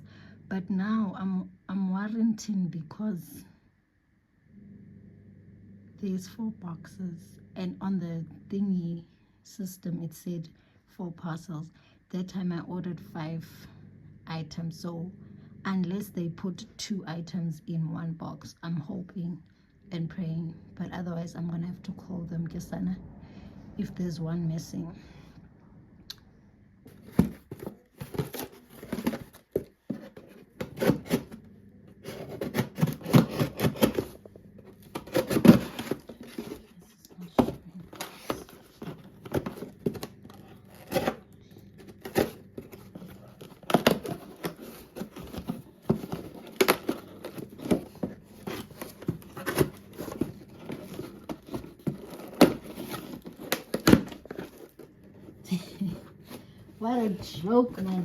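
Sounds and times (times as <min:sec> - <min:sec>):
tape tearing: 0:26.9 - 0:31.4, 0:32.0 - 0:34.2, 0:34.8 - 0:36.6, 0:37.9 - 0:41.2, 0:41.8 - 0:54.9
cardboard and packaging rustling: 0:26.9 - 0:58.0.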